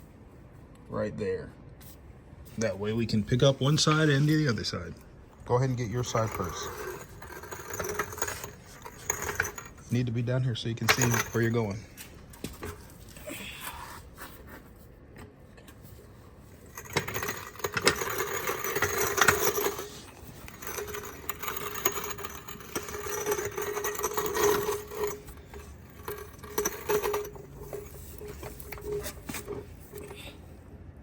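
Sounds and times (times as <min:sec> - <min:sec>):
floor jack metal rattling and clicking: 0:06.1 - 0:09.9, 0:16.7 - 0:30.2.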